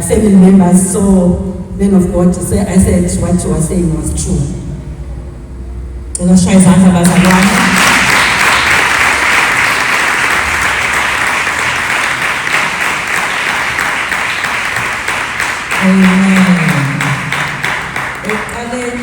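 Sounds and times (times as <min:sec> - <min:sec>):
congregation applauding: 0:07.0 - 0:19.0
person speaking: 0:15.8 - 0:17.3.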